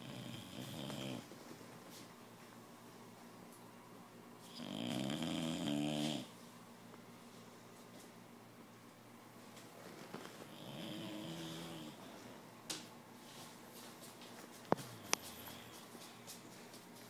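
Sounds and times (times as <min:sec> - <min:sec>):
puppy snoring: 0:00.0 - 0:01.3, 0:04.4 - 0:06.3, 0:10.4 - 0:12.0.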